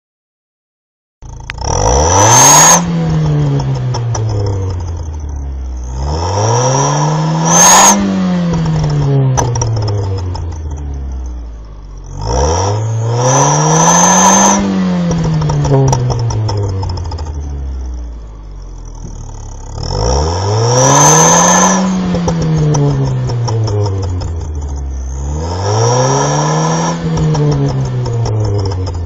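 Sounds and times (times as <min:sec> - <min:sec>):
car engine revving: 0:01.2 - 0:29.0.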